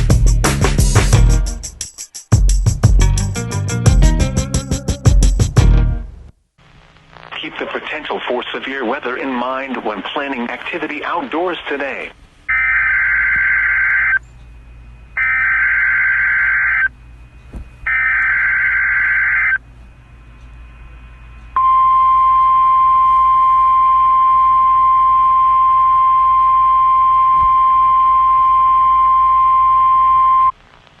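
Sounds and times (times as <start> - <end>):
warning alarm tone: 12.5 - 14.2, 14.8 - 17.0, 17.8 - 19.6, 20.6 - 30.5.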